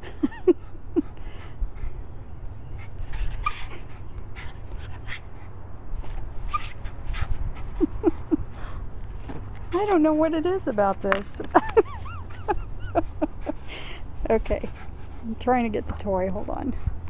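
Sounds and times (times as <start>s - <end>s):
rustling breathy noises: 0.0s - 10.9s, 11.8s - 15.6s
dog whimpering: 3.1s - 3.9s, 6.5s - 6.9s, 11.7s - 13.6s
dog yelping: 3.1s - 5.3s, 6.4s - 7.2s, 11.7s - 13.6s.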